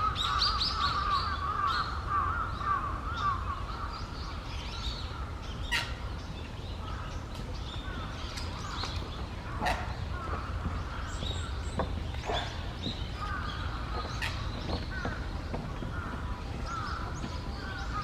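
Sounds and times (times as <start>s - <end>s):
birds chirping: 0.1s - 18.0s
steady low rumble: 4.1s - 18.0s.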